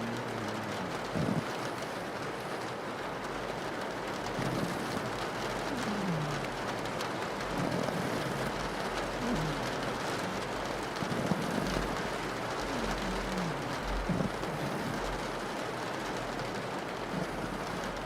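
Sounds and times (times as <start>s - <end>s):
dog snoring: 0.0s - 1.9s, 4.4s - 6.6s, 7.5s - 15.3s, 17.1s - 18.0s
rain on a window: 0.0s - 18.0s.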